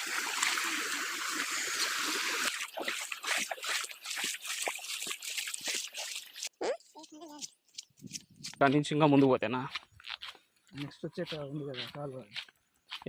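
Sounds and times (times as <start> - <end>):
water trickling and splashing: 0.0 - 8.6.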